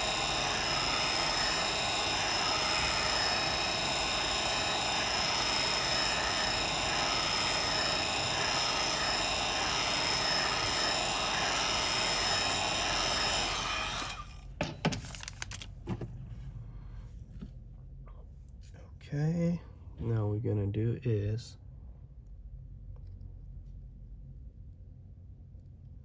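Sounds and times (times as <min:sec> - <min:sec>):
heat gun whirring: 0:00.0 - 0:14.6.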